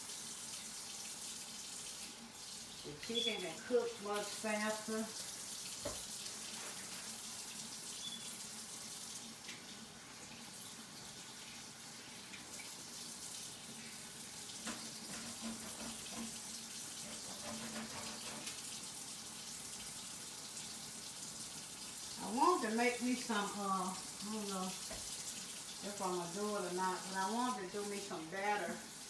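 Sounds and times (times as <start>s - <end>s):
tap running into sink: 5.7s - 6.8s, 14.5s - 18.7s, 24.7s - 25.3s.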